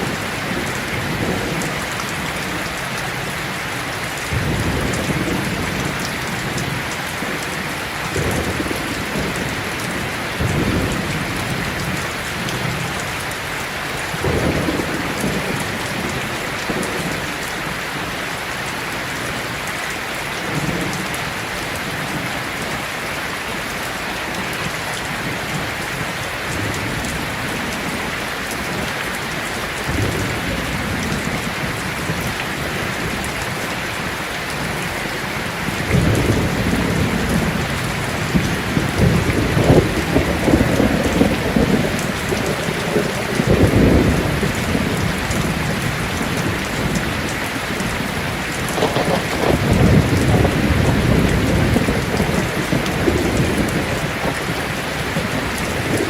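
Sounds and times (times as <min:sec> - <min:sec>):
heavy rain falling: 0:00.0 - 0:56.0
thunder rumbling: 0:04.3 - 0:13.0, 0:29.9 - 0:56.0.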